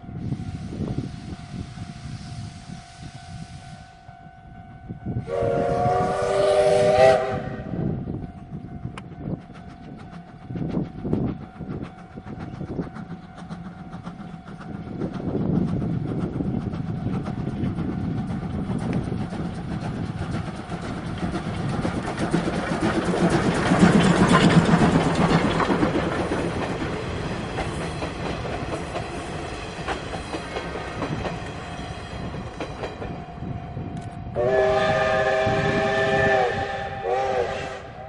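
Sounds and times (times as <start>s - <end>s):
steam train passing: 0.0s - 38.0s
train whistle blasts: 0.2s - 8.0s, 34.2s - 38.0s
wheels clattering over rail joints: 16.9s - 33.2s.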